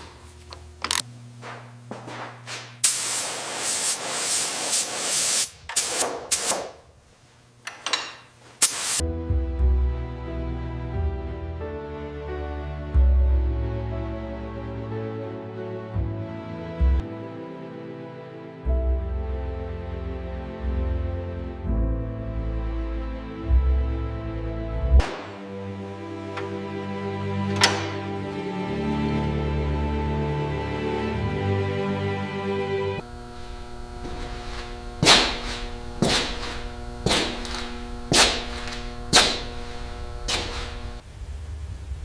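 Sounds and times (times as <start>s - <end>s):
soft sustained chords: 9.0s - 40.2s.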